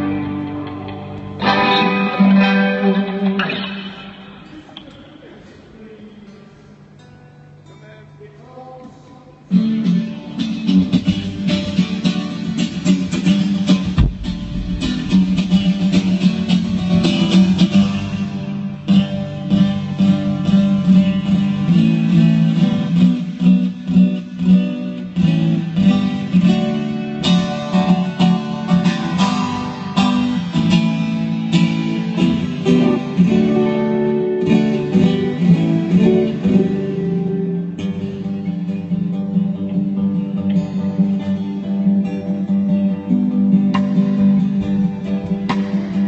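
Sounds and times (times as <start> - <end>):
strummed acoustic guitar: 0.0 - 46.0
folk band playing: 10.5 - 21.5, 27.3 - 40.5.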